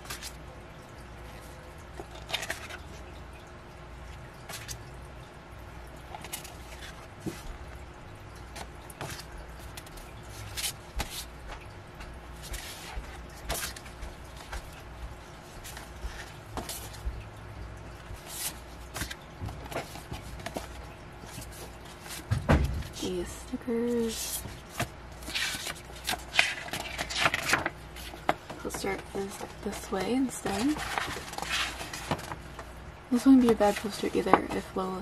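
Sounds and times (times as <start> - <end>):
low steady hum: 0.0 - 35.0
paper and card rustling: 2.0 - 3.0, 6.0 - 7.7, 8.5 - 11.6, 12.4 - 17.1, 18.1 - 35.0.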